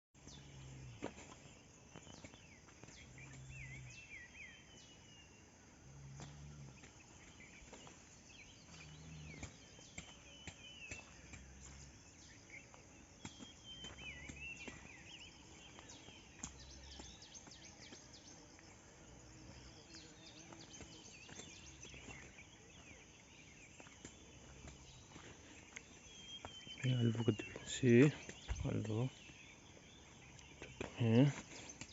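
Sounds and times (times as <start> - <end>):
birds chirping: 0.2 - 31.9.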